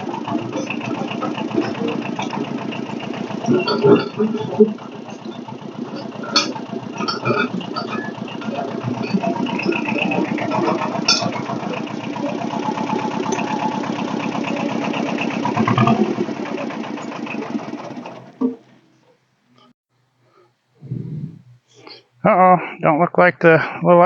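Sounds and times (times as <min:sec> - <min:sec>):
machine engine running hard: 0:00.0 - 0:19.1
metal clanks: 0:00.0 - 0:19.7.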